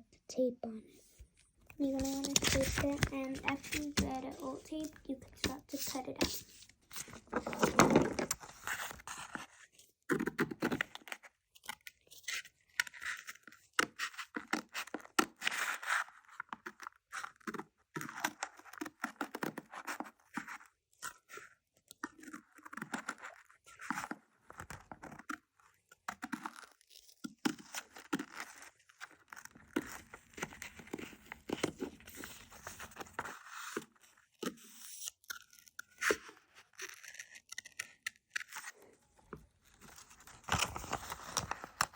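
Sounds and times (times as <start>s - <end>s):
paper crinkling and tearing: 1.8s - 9.6s, 26.2s - 38.9s, 39.6s - 41.9s.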